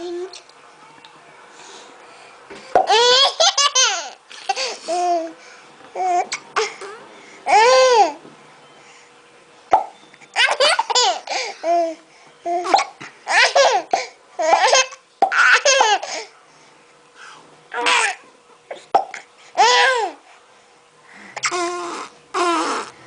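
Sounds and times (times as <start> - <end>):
baby laughing: 2.8 - 5.2, 10.4 - 11.9, 12.6 - 16.2.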